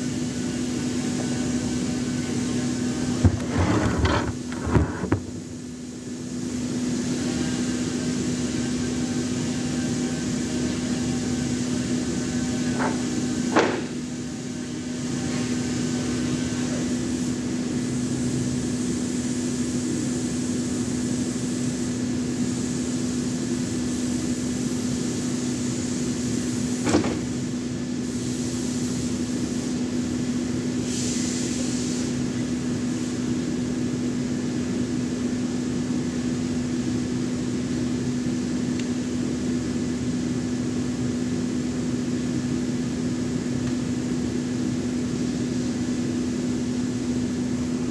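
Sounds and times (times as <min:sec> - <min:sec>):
sharp knocks: 0:13.6 - 0:14.0.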